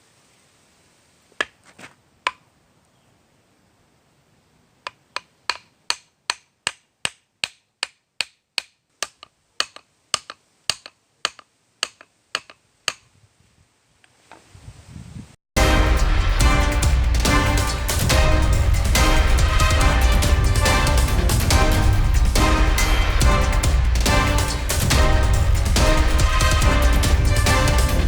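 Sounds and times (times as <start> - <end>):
hammer strikes: 15.6 - 28.0.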